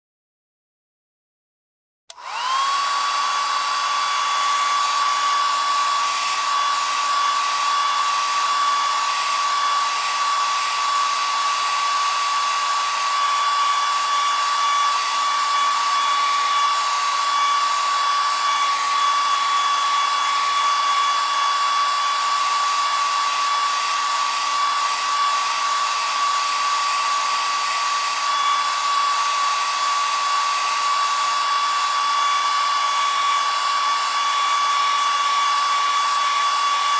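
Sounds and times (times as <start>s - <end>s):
electric shaver buzzing: 2.1s - 36.9s.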